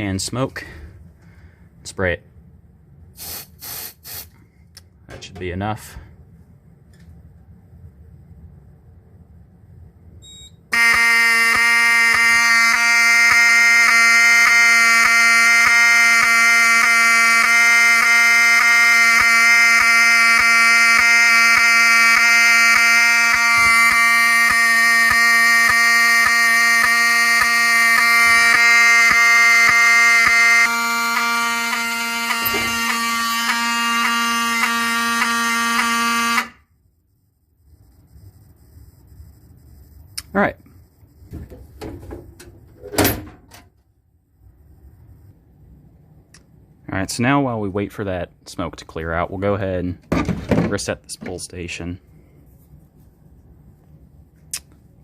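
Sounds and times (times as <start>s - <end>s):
fire alarm horn tone: 10.2s - 36.8s.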